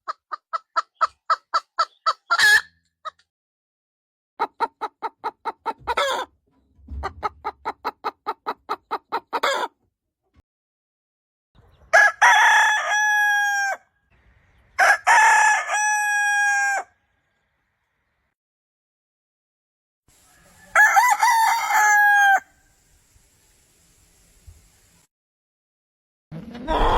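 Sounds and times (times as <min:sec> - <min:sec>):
chicken squawk: 0:00.0 - 0:03.2, 0:04.4 - 0:06.3, 0:07.6 - 0:09.8, 0:26.6 - 0:26.9
chickens clucking: 0:00.0 - 0:03.3, 0:04.4 - 0:09.9
rooster crowing: 0:11.9 - 0:13.9, 0:14.8 - 0:17.0, 0:20.2 - 0:22.7.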